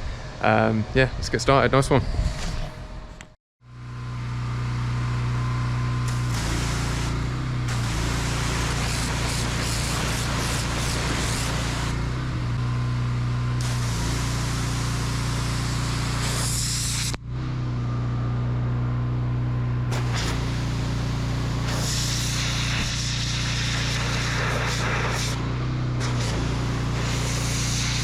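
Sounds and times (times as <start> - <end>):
pressure washer motor humming: 4.2 - 12.2, 13.6 - 17.2, 19.9 - 25.4, 26.0 - 28.0
water jet hissing: 6.2 - 12.0, 19.9 - 25.4, 26.0 - 28.0.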